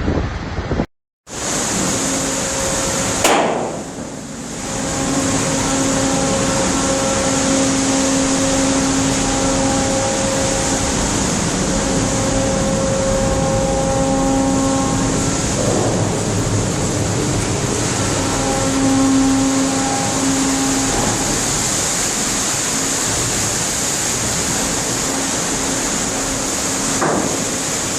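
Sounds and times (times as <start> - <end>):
machinery hum and rushing: 0.0 - 27.9
sharp knock: 3.2 - 3.9.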